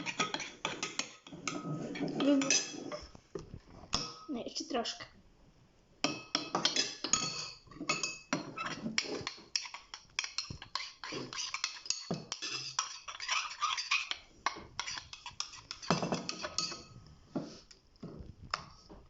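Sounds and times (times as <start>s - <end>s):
utensil stirring slime in a bowl: 0.0s - 3.2s, 6.0s - 18.9s
utensil clinking against bowl: 6.1s - 17.0s.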